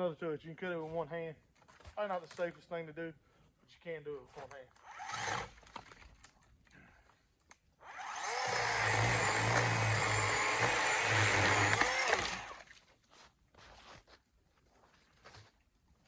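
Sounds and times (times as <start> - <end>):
electric chainsaw cutting limbs: 4.8 - 5.6, 7.8 - 12.7.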